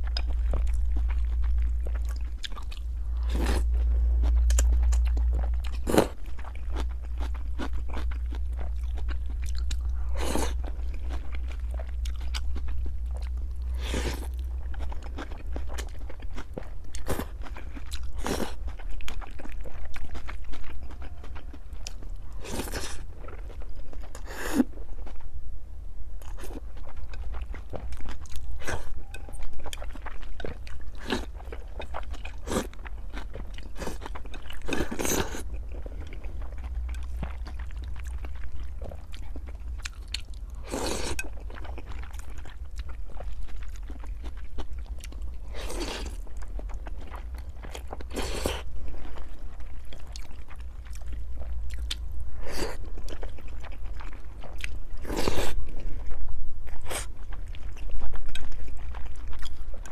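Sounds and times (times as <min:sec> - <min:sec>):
person chewing wetly: 0:00.0 - 0:25.2, 0:26.2 - 0:59.9.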